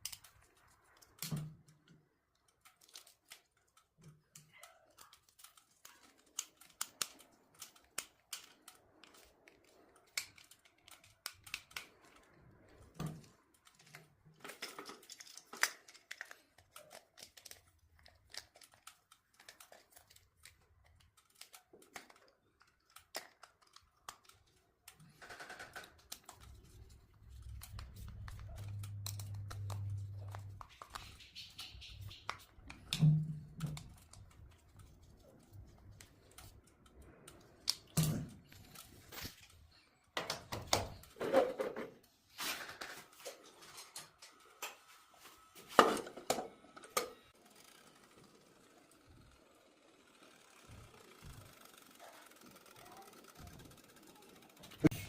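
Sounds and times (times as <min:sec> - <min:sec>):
handling clicks and crinkling: 0:00.0 - 0:47.8.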